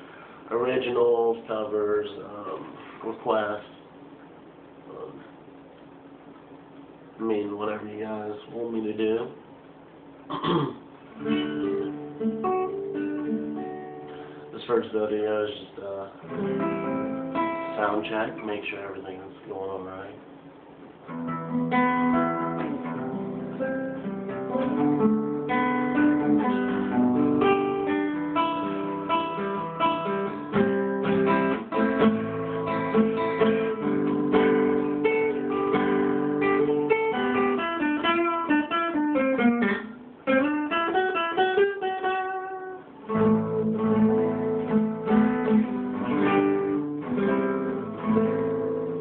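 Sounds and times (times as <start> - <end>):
acoustic guitar: 10.2 - 20.1, 20.8 - 49.0.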